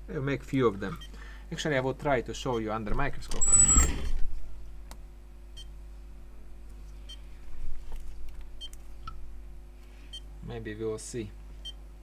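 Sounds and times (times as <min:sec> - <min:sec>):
low steady hum: 0:00.0 - 0:12.0
short high beeps: 0:03.4 - 0:04.0.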